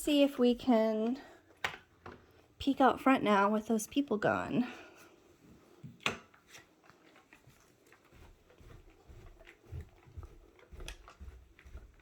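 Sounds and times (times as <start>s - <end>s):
faint footsteps: 4.8s - 12.0s.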